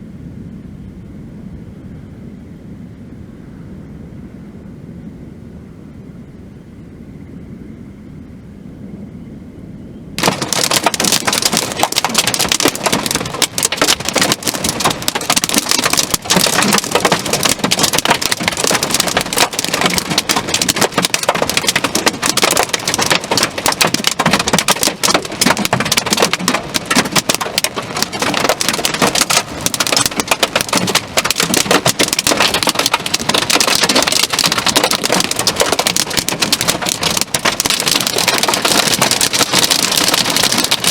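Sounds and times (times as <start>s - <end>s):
heavy rain pelting down: 10.2s - 40.9s.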